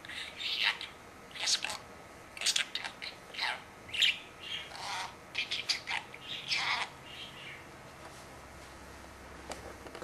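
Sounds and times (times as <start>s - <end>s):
budgerigar talking: 0.1s - 7.7s.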